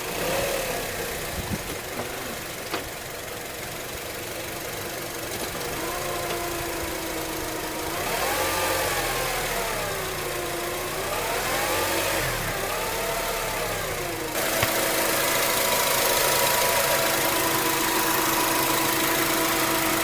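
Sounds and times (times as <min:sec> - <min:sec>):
engine and road noise: 0:00.0 - 0:20.0.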